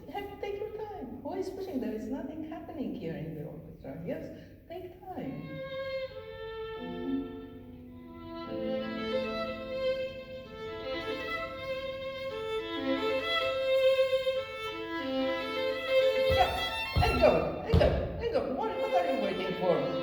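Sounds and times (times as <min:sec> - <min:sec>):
solo violin playing slowly: 0:05.4 - 0:17.8, 0:18.5 - 0:20.0.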